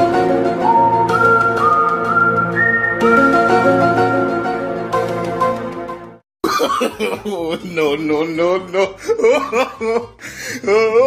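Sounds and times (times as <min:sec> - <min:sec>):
whistle-like lead melody: 0:00.0 - 0:05.5.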